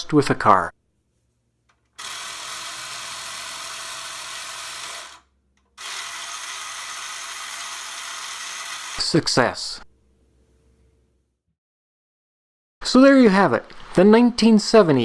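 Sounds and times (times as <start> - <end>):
small electric motor whirring: 2.0 - 9.0.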